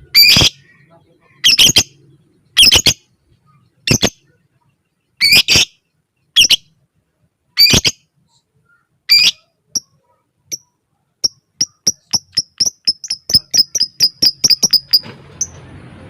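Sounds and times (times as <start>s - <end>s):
lovebird harsh calls: 0.1s - 0.8s, 1.4s - 2.0s, 2.6s - 3.1s, 5.2s - 5.8s, 6.4s - 6.7s, 7.6s - 8.1s, 9.1s - 9.9s, 11.2s - 15.5s
bird sharp ticking notes: 10.5s - 15.6s.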